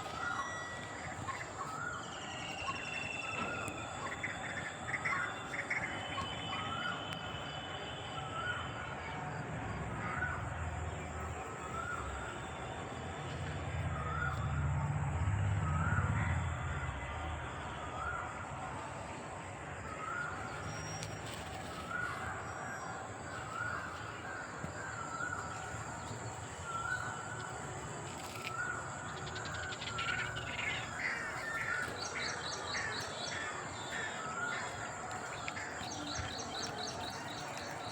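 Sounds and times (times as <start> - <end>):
birds chirping: 19.9 - 37.9
birds calling: 20.0 - 37.9.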